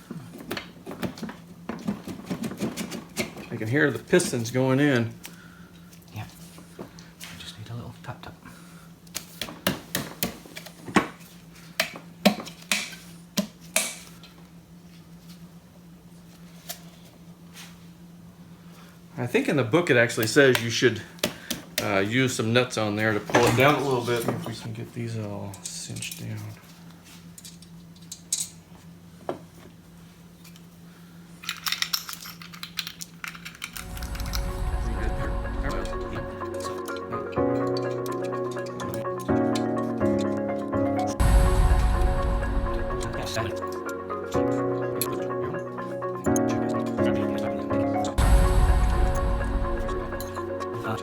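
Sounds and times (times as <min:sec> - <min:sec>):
metal nuts and washers clinking: 0:31.4 - 0:33.8
steady low hum: 0:33.7 - 0:51.0.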